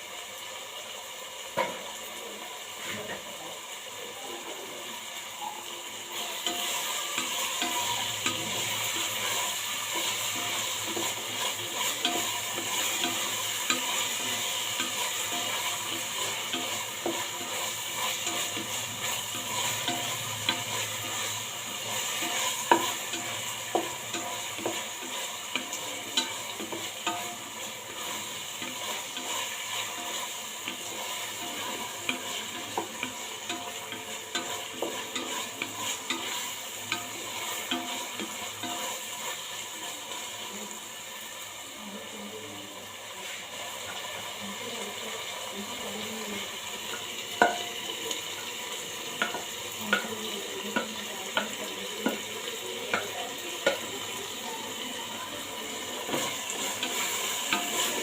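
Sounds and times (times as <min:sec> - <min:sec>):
food sizzling in a pan: 0:00.0 - 0:58.0
metal spoon scraping a pan: 0:06.1 - 0:39.5, 0:55.4 - 0:58.0.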